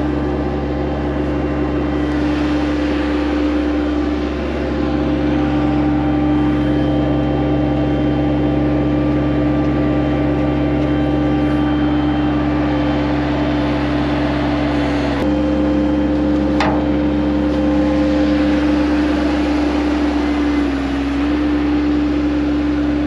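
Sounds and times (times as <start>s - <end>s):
loader engine running: 0.0s - 23.0s.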